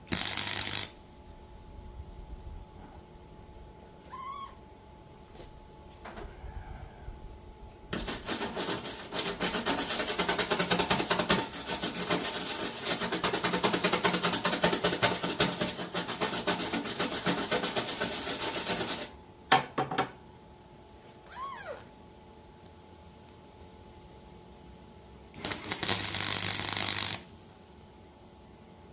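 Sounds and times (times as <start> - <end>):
welder arc crackling: 0.0 - 1.0, 25.3 - 27.3.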